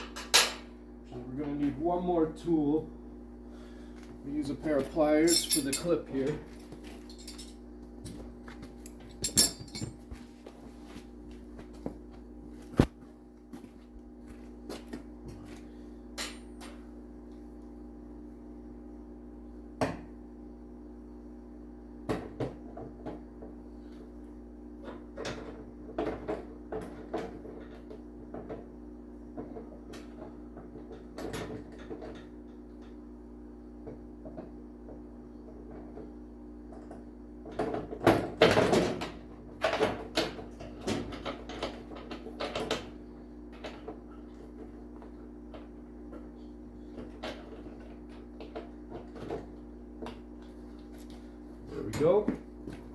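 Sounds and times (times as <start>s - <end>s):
steady hum: 0.0s - 14.5s.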